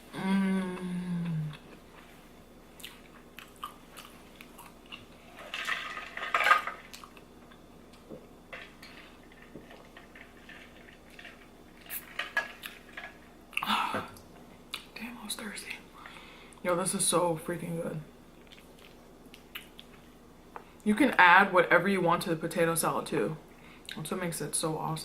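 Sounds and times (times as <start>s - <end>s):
chewing: 2.8s - 6.0s, 18.4s - 20.0s.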